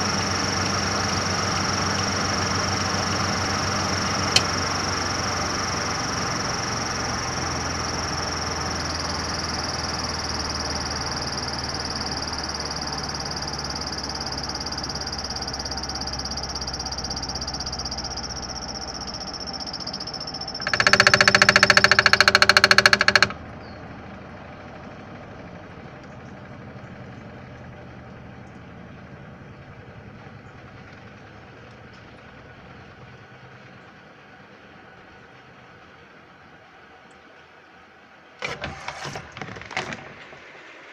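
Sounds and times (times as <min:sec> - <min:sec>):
washing machine spinning: 0:00.0 - 0:23.4
loud buzzer: 0:19.6 - 0:23.4.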